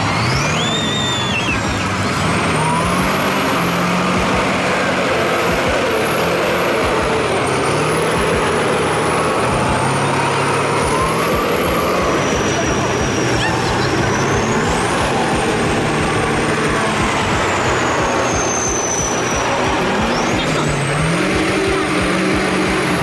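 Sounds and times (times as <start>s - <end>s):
thin high whistle: 0.0s - 5.0s
diesel engine running hard: 0.0s - 23.0s.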